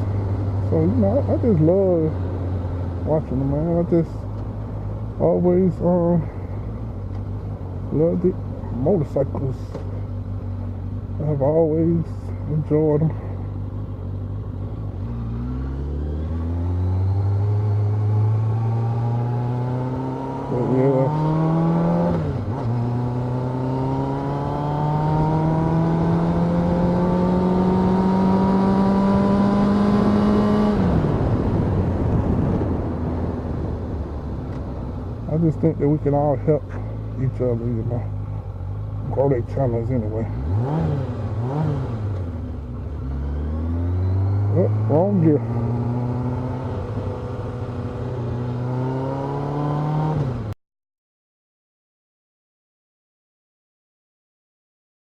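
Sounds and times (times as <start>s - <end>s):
wind and road noise: 0.0s - 50.6s
motorcycle engine revving: 13.8s - 33.8s, 40.2s - 50.6s.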